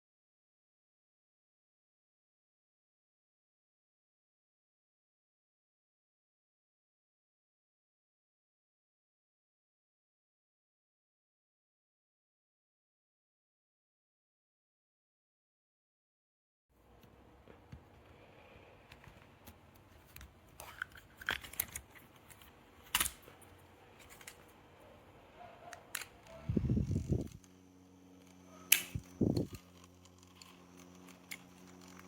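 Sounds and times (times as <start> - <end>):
small clicks and handling knocks: 18.8 - 24.6
small electric motor humming: 25.8 - 32.0.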